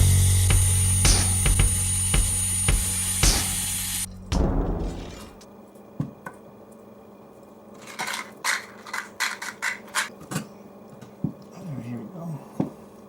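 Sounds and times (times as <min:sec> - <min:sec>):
power tool: 0:00.0 - 0:04.1
metal parts clicking and clattering: 0:07.8 - 0:10.1.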